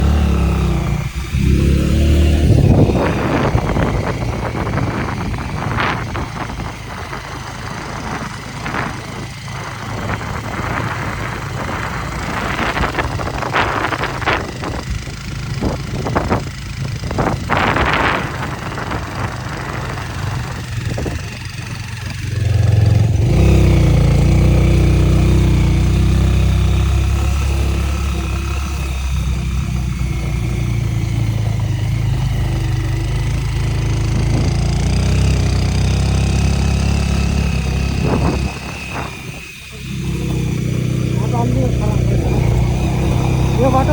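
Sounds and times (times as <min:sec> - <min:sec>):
motorcycle engine running: 0:00.0 - 0:43.9
wind buffeting microphone: 0:00.0 - 0:43.9.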